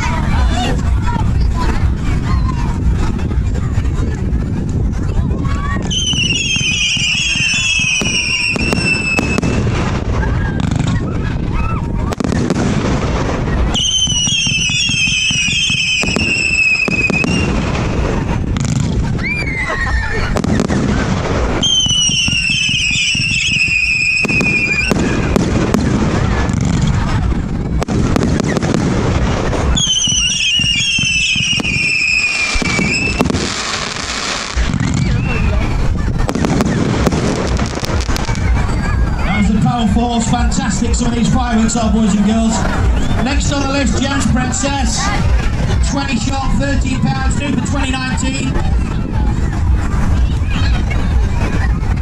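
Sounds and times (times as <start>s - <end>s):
firework bangs and crackle: 0.0s - 52.0s
falling warbling firework whistle: 5.8s - 12.8s, 13.7s - 18.4s, 19.0s - 39.4s.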